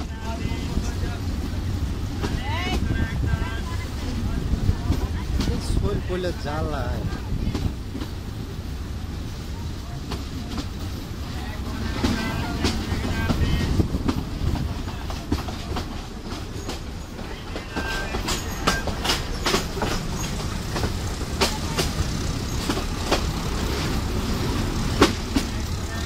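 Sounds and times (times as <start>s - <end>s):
train rumbling on track: 0.0s - 26.0s
wheels clicking over rails: 9.9s - 26.0s.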